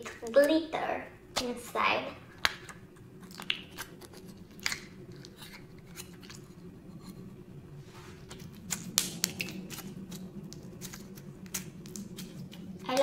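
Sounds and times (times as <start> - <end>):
squishy slime rustle: 2.3 - 13.0.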